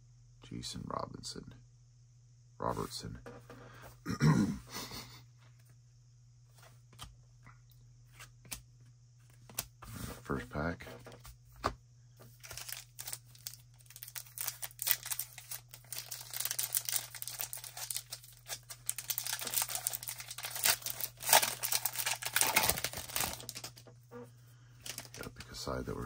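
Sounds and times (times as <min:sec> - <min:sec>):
low electrical hum: 0:00.0 - 0:26.0
foil wrapper crinkling and tearing: 0:12.3 - 0:23.9, 0:24.8 - 0:25.6.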